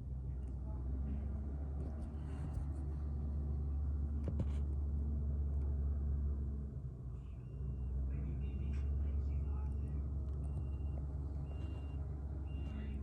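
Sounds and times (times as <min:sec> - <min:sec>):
heavy vehicle engine rumbling: 0:00.0 - 0:13.0
reversing alarm beeping: 0:10.4 - 0:13.0.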